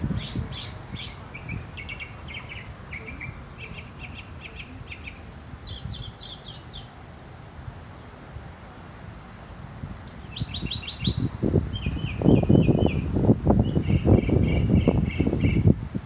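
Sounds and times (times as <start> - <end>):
mockingbird singing: 0.1 - 7.0, 10.2 - 15.7.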